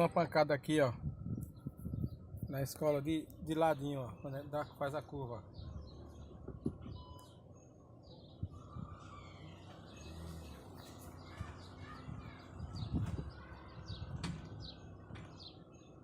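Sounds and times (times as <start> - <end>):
birds chirping: 0.0 - 16.0
low knocks from a car wheel: 14.1 - 15.5.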